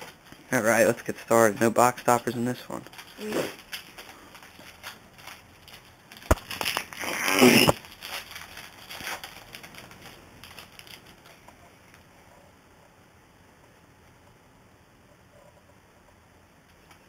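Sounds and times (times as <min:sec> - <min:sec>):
foil wrapper crackling rustle: 0:02.7 - 0:11.5
foil wrapper tearing snap: 0:04.6 - 0:11.1.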